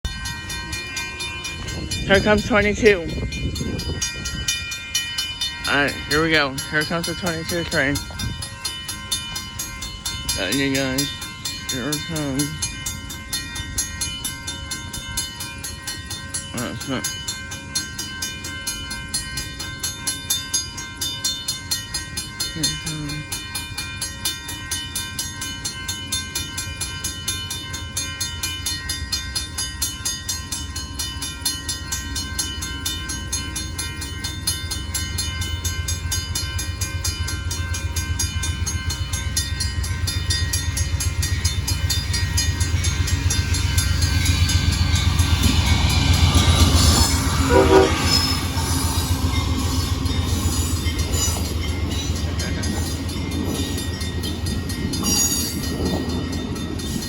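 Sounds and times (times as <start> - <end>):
crossing bell ringing: 0.0 - 57.0
train rumble: 0.0 - 57.0
train horn: 47.0 - 49.2.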